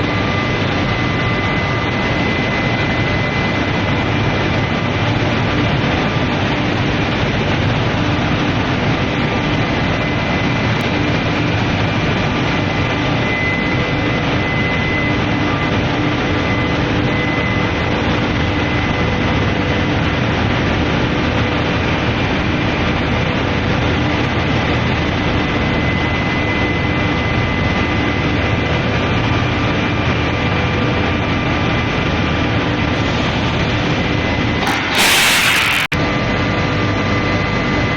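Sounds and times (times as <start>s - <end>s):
loud machine noise with tones: 0.0s - 25.9s, 33.0s - 36.1s.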